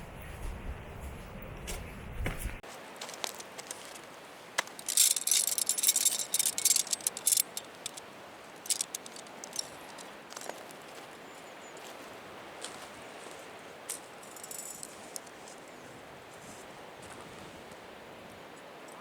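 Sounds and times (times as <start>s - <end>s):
small hard objects rattling: 4.6s - 10.6s, 14.2s - 15.3s.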